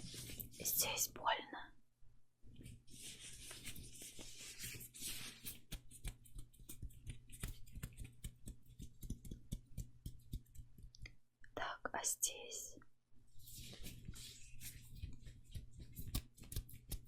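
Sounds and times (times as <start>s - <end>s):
gloved fingertips rubbing: 0.0s - 0.6s, 2.6s - 11.1s, 13.4s - 17.0s
small crackles and clicks: 5.5s - 11.1s.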